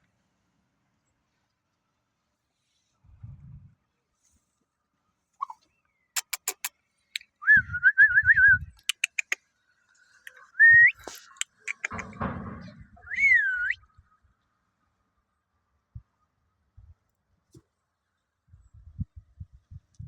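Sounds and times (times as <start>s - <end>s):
sharp clicks: 6.2s - 7.3s, 8.8s - 9.4s, 11.0s - 12.2s
person whistling: 7.4s - 8.7s, 10.6s - 11.1s, 13.1s - 13.8s.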